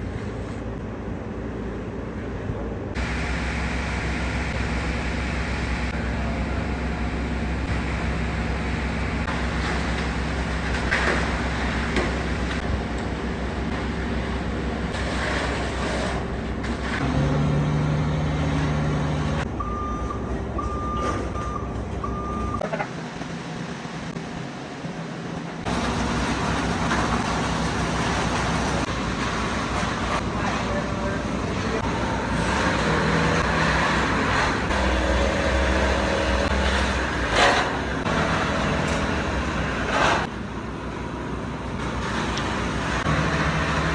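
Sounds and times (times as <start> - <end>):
heavy truck engine running: 0.0 - 43.9
reversing alarm beeping: 19.6 - 22.7.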